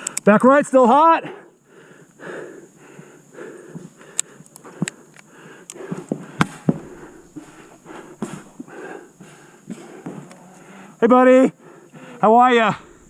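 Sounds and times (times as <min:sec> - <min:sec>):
footsteps: 0:04.6 - 0:10.3.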